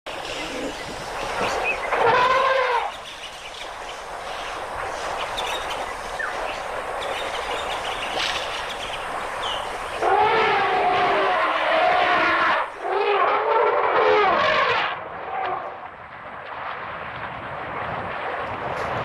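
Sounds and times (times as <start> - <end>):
outdoor background noise: 0.1 - 19.0
elephant trumpeting: 1.4 - 3.0, 10.0 - 15.7.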